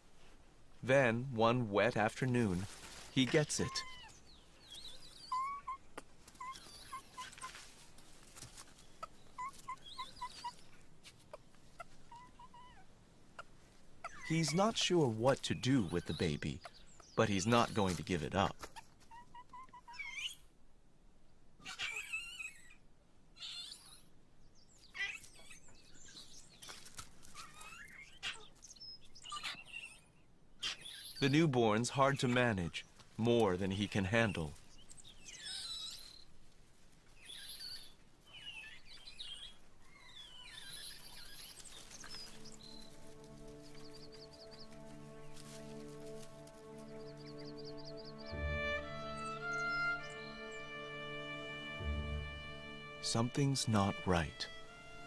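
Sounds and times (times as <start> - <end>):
monkeys making squeaky calls: 3.6 - 4.2, 5.1 - 7.5, 9.4 - 10.6, 14.0 - 14.9, 18.6 - 20.4, 21.6 - 22.8, 23.4 - 24.0, 35.3 - 36.2, 37.2 - 43.6
high twittering: 40.2 - 55.0.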